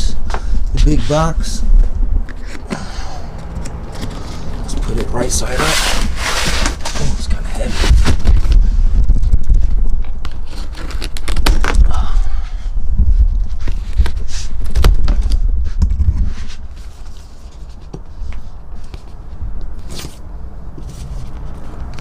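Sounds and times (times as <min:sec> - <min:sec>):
handling rumble: 0:00.3 - 0:10.8
cardboard box scraping: 0:03.9 - 0:08.6.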